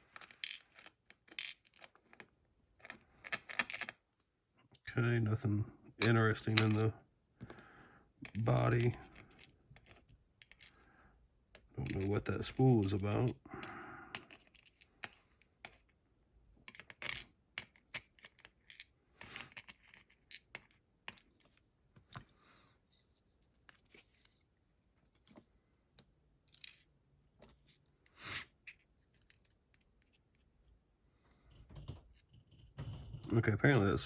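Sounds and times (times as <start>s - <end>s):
small metal parts clicking: 0.1s - 4.0s.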